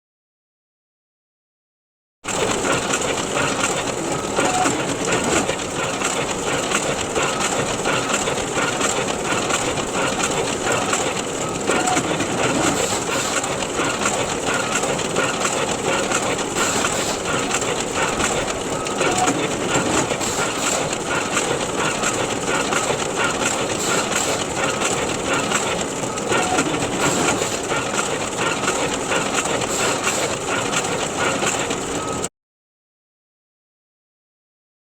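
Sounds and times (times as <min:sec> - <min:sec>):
photocopier whirring: 0:02.3 - 0:32.3.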